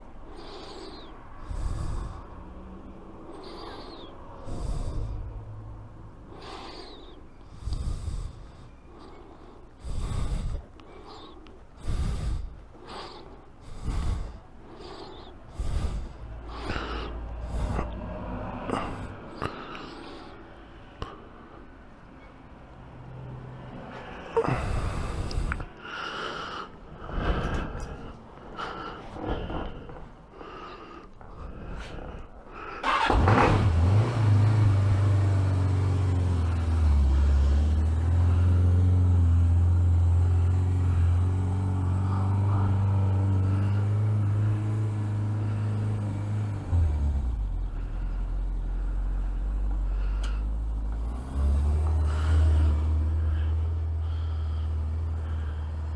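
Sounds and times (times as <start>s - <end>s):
motorcycle engine idling: 32.8s - 51.0s.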